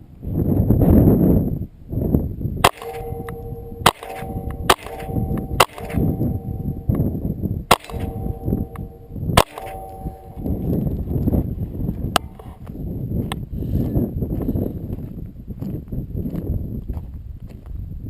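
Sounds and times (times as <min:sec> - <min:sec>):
rifle shots: 0:02.6 - 0:07.0, 0:07.7 - 0:10.6
metal target clanging: 0:02.6 - 0:11.0.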